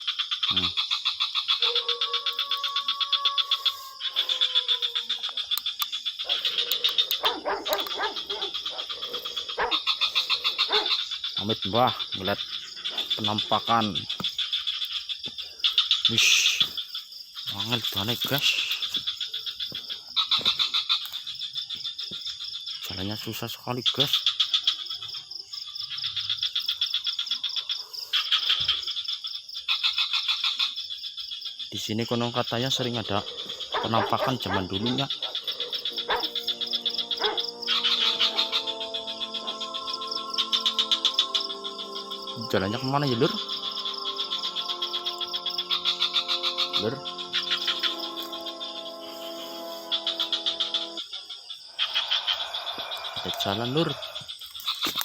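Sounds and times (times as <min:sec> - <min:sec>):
frogs calling: 0:00.0 - 0:55.0
dog howling: 0:01.6 - 0:05.3, 0:06.2 - 0:11.0, 0:33.0 - 0:51.0
dog barking and yelping: 0:06.2 - 0:11.0, 0:33.1 - 0:38.8.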